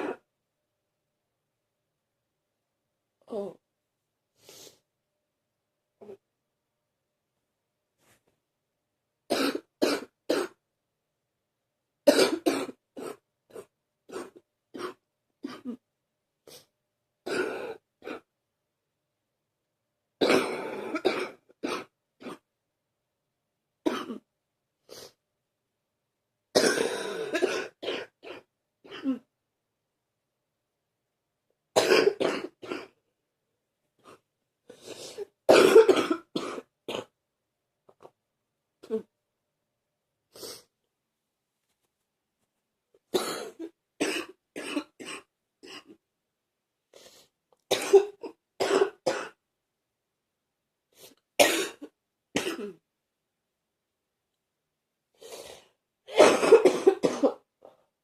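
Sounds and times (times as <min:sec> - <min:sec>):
person coughing deeply: 0:12.1 - 0:13.2, 0:20.2 - 0:22.4, 0:23.9 - 0:24.3, 0:26.6 - 0:29.3, 0:31.8 - 0:33.0, 0:35.5 - 0:37.1, 0:43.2 - 0:46.0, 0:47.7 - 0:49.4, 0:51.4 - 0:52.8, 0:56.1 - 0:57.5.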